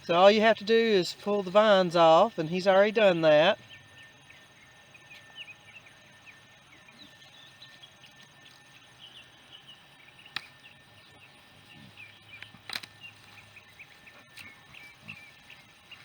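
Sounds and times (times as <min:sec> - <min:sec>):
small birds chirping: 0:00.0 - 0:16.0
sharp clicks: 0:12.3 - 0:13.1.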